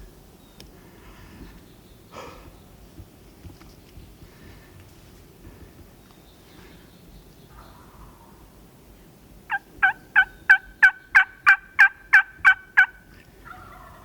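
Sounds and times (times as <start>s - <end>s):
turkey call hen yelps: 9.5s - 14.0s.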